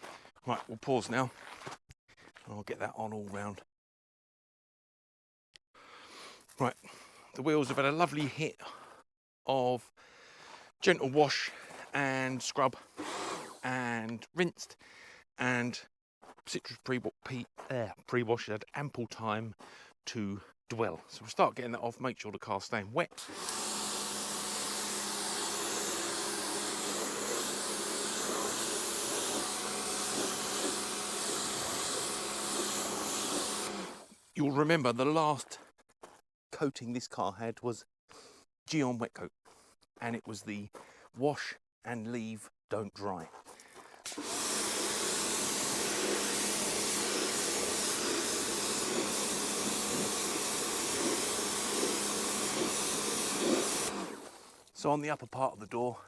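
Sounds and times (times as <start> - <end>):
motor hum: 13.0 - 13.6, 23.2 - 34.1, 44.1 - 54.6
pressure washer spraying water: 23.2 - 34.1, 44.1 - 54.6.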